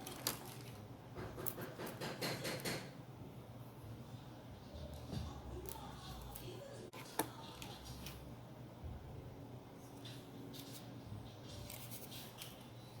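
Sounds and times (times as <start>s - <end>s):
low steady hum: 3.0s - 13.0s
soft handling rustles and scrapes: 9.8s - 13.0s.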